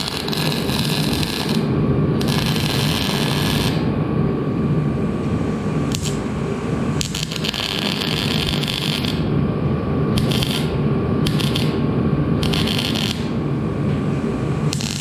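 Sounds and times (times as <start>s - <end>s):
crackling welding: 0.0s - 3.9s, 5.9s - 6.3s, 7.0s - 9.4s, 10.1s - 13.5s, 14.6s - 15.0s
steady low hum: 0.0s - 15.0s.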